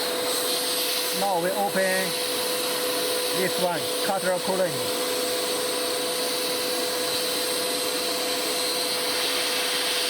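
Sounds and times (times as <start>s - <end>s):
constant machine hum: 0.0s - 10.0s
machine hiss and whir: 0.0s - 10.0s.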